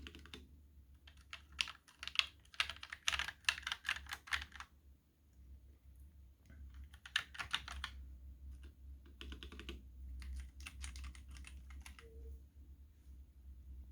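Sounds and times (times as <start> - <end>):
mechanical keyboard typing: 0.0 - 4.7, 6.7 - 8.0, 8.6 - 12.2
steady low hum: 7.6 - 13.9.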